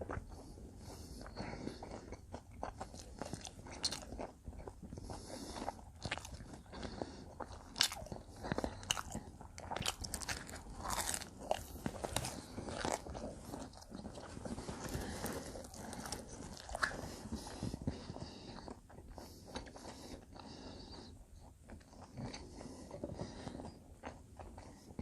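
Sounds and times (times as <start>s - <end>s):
person chewing pizza: 0.0s - 25.0s
crust crunching: 7.8s - 17.5s.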